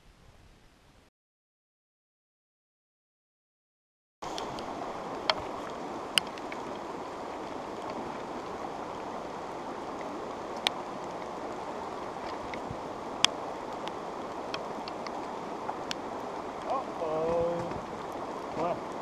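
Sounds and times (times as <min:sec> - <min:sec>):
rushing water: 0:04.2 - 0:19.0.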